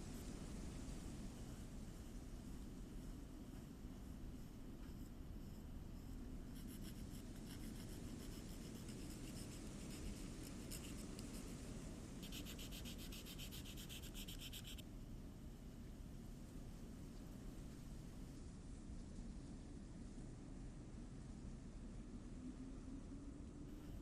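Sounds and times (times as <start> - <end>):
hand rubbing on small wooden part: 12.2 - 14.8.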